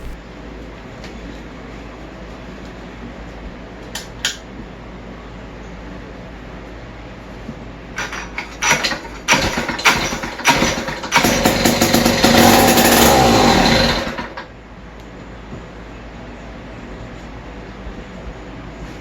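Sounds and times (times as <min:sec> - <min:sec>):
motorcycle engine: 0:08.0 - 0:14.5.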